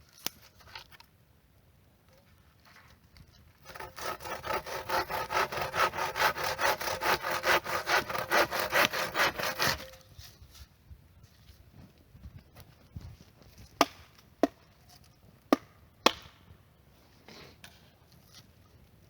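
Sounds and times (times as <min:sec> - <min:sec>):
hand saw cutting wood: 0:03.6 - 0:10.0.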